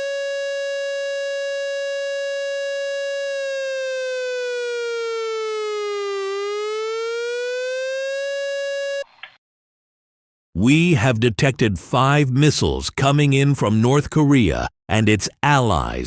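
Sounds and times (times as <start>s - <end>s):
electronic siren tone: 0.0s - 9.3s.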